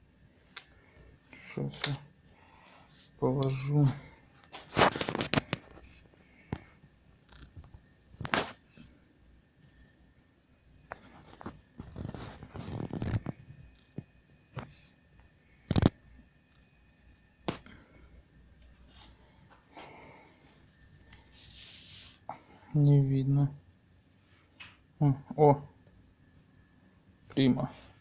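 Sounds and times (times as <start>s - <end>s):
rustling and scraping: 2.8s - 9.0s, 10.9s - 14.9s, 18.6s - 22.3s.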